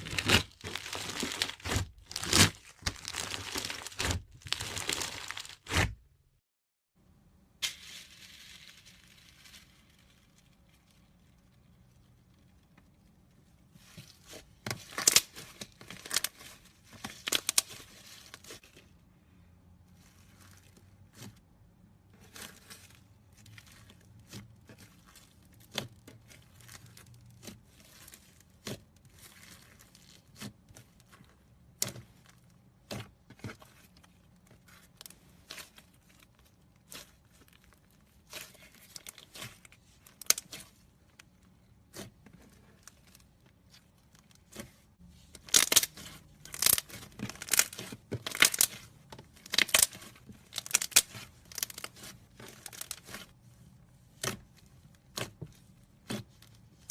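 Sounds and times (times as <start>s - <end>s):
slime squished by hand: 0.0s - 6.0s.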